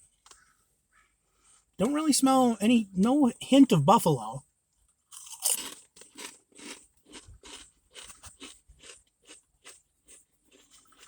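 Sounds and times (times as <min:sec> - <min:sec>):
person chewing potato chips: 0:05.1 - 0:11.0.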